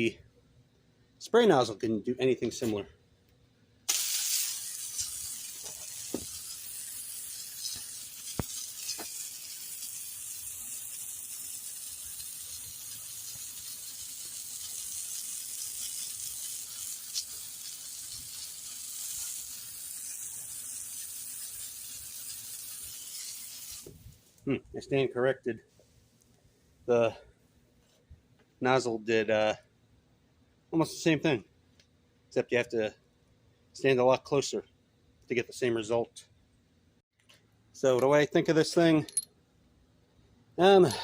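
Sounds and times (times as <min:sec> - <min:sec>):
hose nozzle spraying water: 0:03.9 - 0:24.4.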